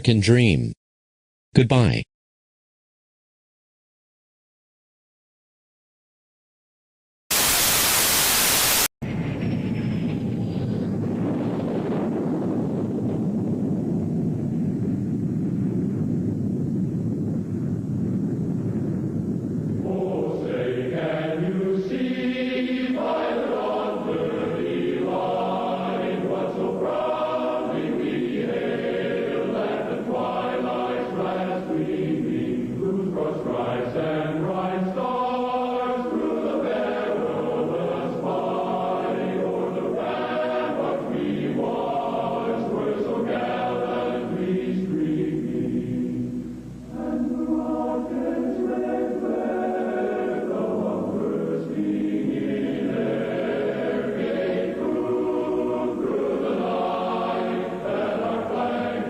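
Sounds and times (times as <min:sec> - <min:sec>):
choir singing sustained chords: 0:19.7 - 0:59.0.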